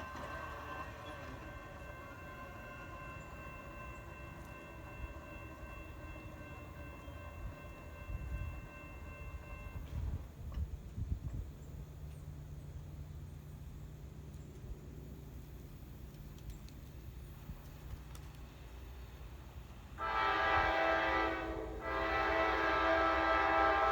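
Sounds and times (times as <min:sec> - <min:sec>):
distant locomotive horn: 0:00.0 - 0:10.3, 0:20.0 - 0:23.9
low train engine drone: 0:00.0 - 0:23.9.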